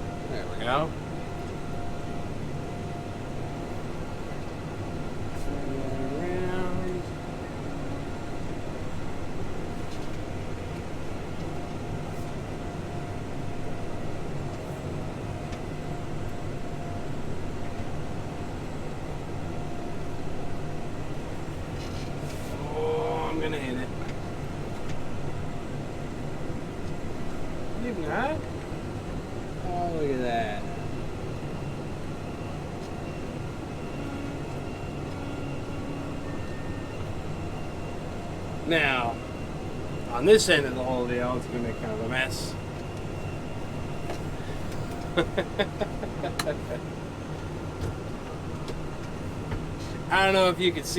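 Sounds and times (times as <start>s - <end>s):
faint steady whines: 0.0s - 50.9s
tractor engine droning: 30.8s - 50.9s.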